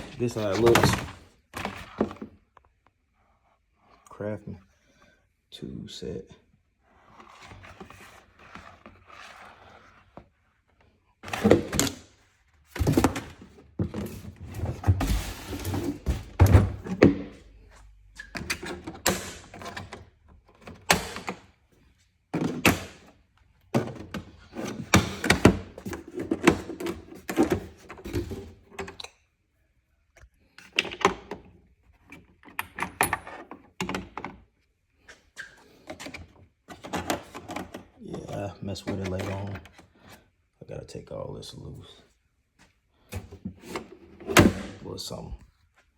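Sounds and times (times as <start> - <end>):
tool case thunks and rattles: 11.2 - 12.1, 12.7 - 17.4, 22.3 - 29.0.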